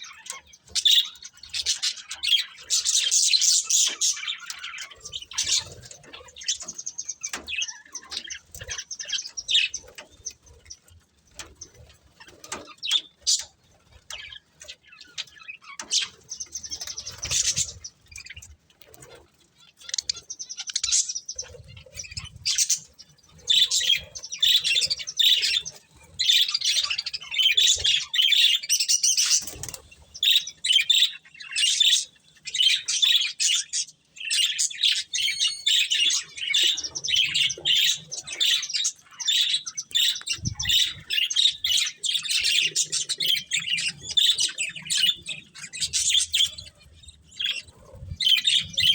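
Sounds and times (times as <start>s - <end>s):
budgerigars chattering: 19.7s - 48.9s.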